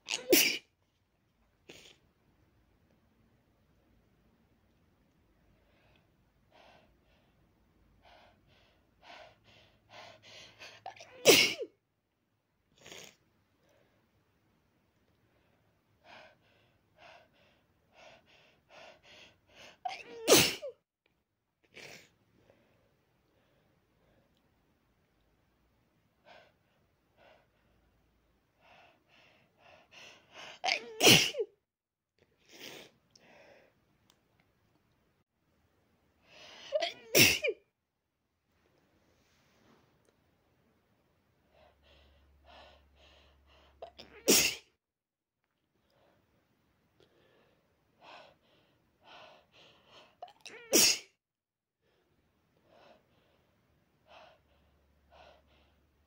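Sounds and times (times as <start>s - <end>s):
loud sneeze: 0.0s - 0.7s, 11.0s - 11.8s, 19.9s - 20.8s, 30.7s - 31.5s, 36.8s - 37.6s, 44.0s - 44.8s, 50.5s - 51.2s
quiet breathing: 5.4s - 10.9s, 15.1s - 19.8s, 22.2s - 24.6s, 26.1s - 30.6s, 38.6s - 40.1s, 41.3s - 43.8s, 45.7s - 50.2s, 51.8s - 56.0s.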